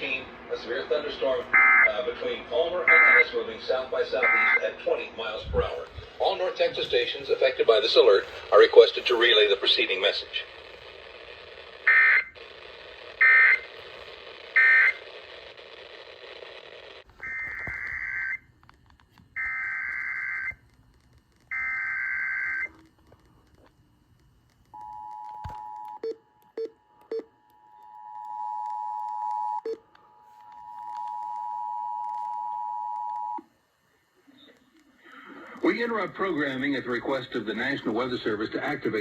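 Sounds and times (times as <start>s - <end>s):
radio background hiss: 0.0s - 18.4s, 29.9s - 39.0s
screeching data bursts: 7.0s - 18.4s.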